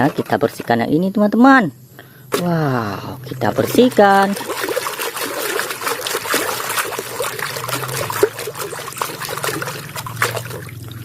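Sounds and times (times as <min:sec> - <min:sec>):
water trickling and splashing: 0:03.4 - 0:11.0.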